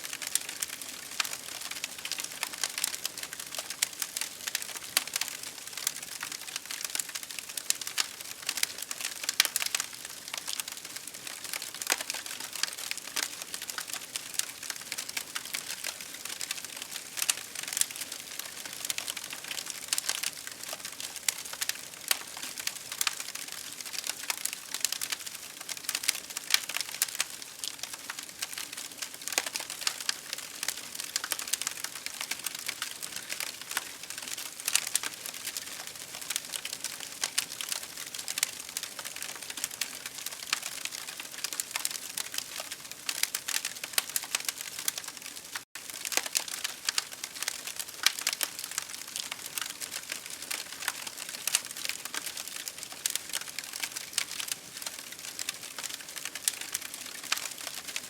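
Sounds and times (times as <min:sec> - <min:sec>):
campfire crackling: 0:00.1 - 0:58.0.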